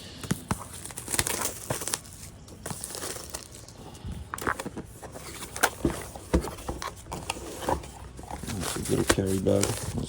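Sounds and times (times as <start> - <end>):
cardboard rustling: 0.2 - 10.0.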